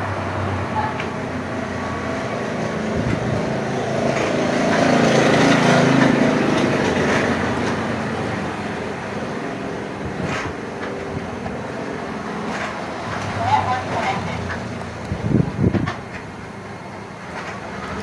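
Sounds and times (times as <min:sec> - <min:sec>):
vehicle engine passing by: 0:00.0 - 0:09.2.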